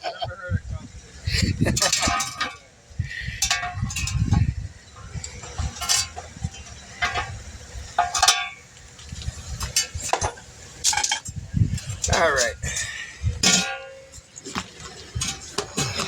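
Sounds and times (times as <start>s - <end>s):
metal tools knocking and clinking: 1.8s - 2.7s, 3.4s - 4.4s, 8.0s - 8.6s.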